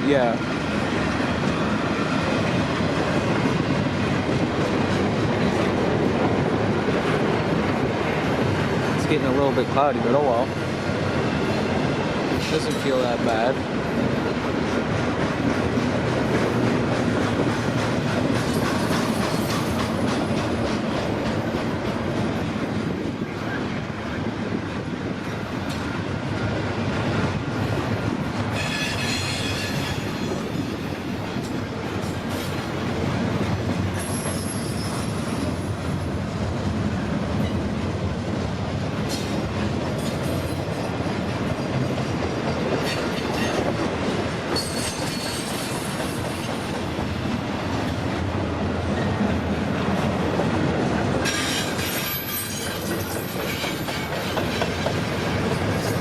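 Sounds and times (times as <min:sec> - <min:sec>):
train wheels rumbling and clattering: 0:00.0 - 0:56.0
high-pitched wheel squeal: 0:34.0 - 0:35.6.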